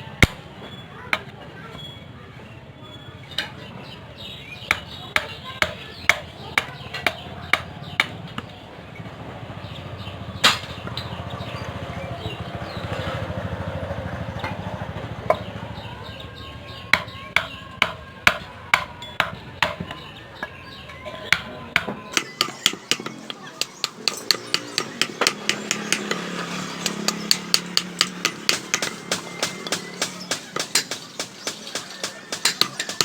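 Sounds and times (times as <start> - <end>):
hammer striking metal on anvil: 21.3 - 33.0.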